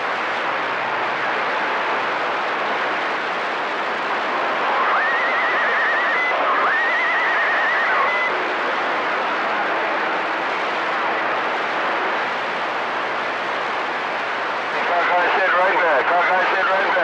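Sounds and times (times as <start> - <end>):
radio static hiss: 0.0 - 17.0
warbling radio tones: 4.4 - 8.4, 14.7 - 17.0.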